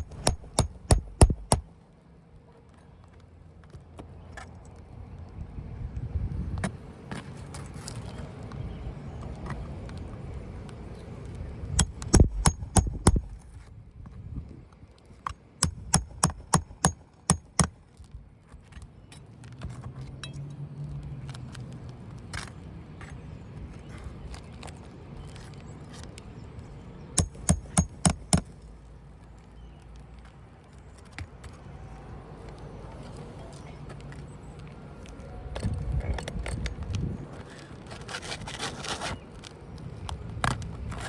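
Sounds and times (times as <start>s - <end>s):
hammer striking metal: 0.0s - 1.6s, 11.8s - 13.4s, 15.6s - 17.7s, 27.2s - 28.5s.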